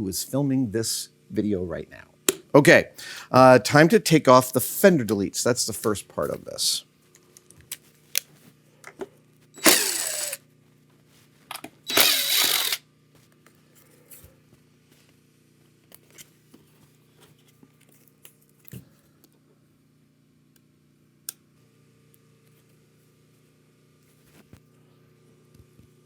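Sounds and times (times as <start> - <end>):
cordless power driver whirring: 9.6 - 10.4, 11.9 - 12.8.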